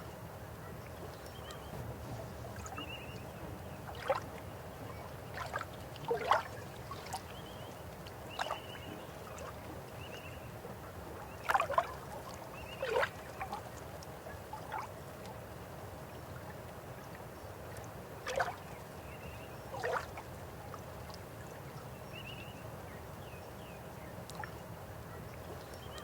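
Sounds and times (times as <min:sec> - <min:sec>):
river water flowing: 0:01.3 - 0:21.9
water gurgles and plops: 0:05.2 - 0:07.4, 0:11.2 - 0:13.9.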